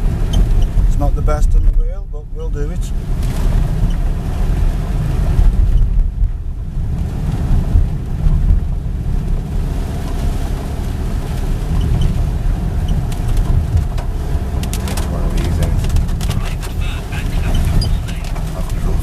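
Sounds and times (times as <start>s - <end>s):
car engine and road noise: 0.0s - 19.0s.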